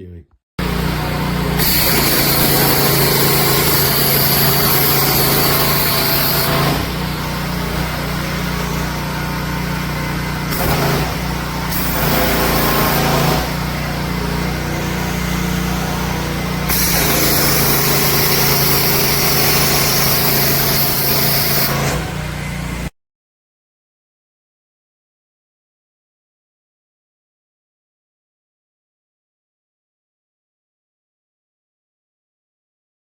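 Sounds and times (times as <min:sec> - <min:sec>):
pressure washer motor humming: 0:00.6 - 0:22.9.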